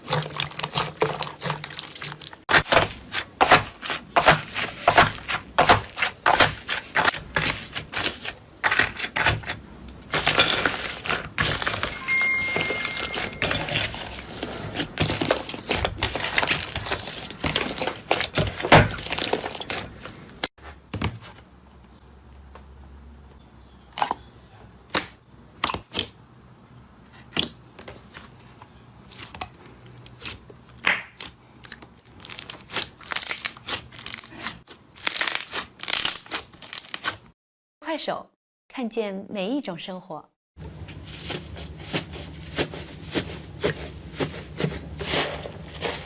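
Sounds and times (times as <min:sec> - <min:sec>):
slime crackling and popping: 0:32.1 - 0:37.2.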